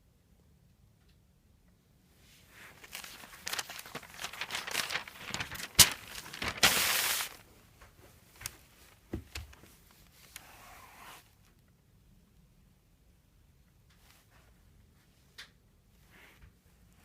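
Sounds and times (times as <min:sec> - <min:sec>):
paper rustling and crinkling: 0:02.4 - 0:07.5, 0:08.3 - 0:10.6.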